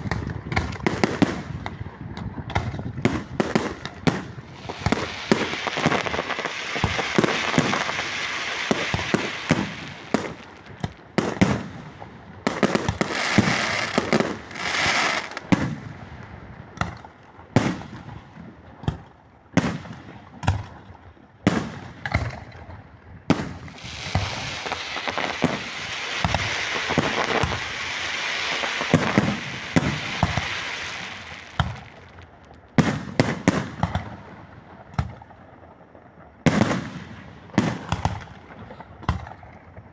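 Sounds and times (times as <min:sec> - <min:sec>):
firework crackling: 0:00.0 - 0:01.8, 0:02.6 - 0:16.1, 0:23.3 - 0:34.4
firework bangs: 0:00.0 - 0:16.2, 0:16.8 - 0:18.2, 0:23.3 - 0:35.3, 0:36.4 - 0:39.9.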